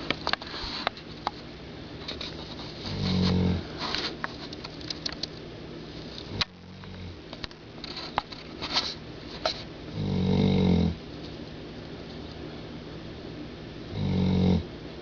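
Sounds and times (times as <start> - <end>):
clicks and snuffles: 0.0 - 5.4, 6.0 - 9.7
person snoring: 2.9 - 3.7, 9.9 - 11.0, 13.9 - 14.6.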